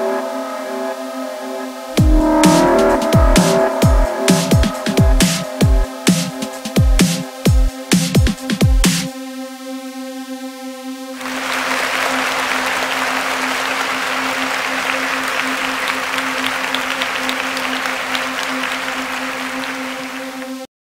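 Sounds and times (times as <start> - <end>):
steady low drone tone: 0.0 - 7.9
held musical tone: 0.0 - 8.5
dense clapping: 11.2 - 20.6.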